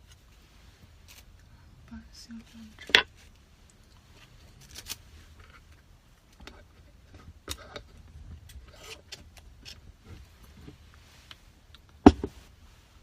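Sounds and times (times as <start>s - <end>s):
faint handling clicks and rustles: 0.0s - 13.0s.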